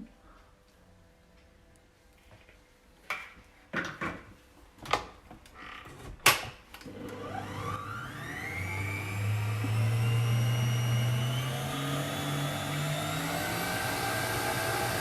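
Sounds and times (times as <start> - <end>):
electric mixer motor running: 6.9 - 15.0.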